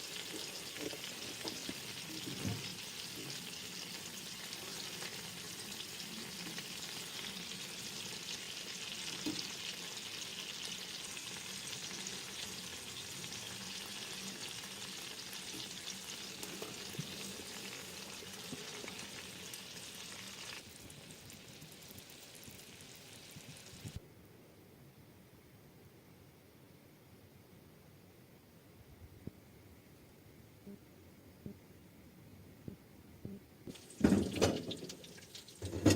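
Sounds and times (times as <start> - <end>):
food sizzling in a pan: 0.0 - 24.0, 33.7 - 35.9.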